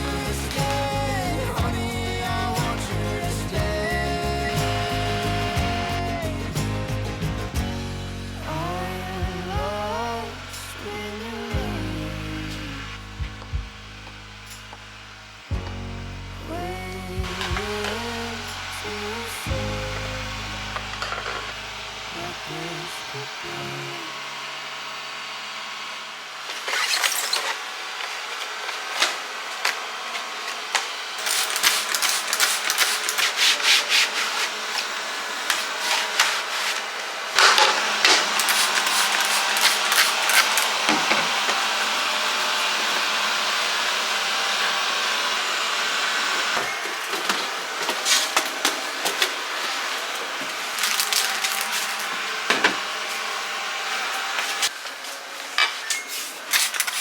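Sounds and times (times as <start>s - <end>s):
scrubbing on a hard surface: 31.2s - 40.7s.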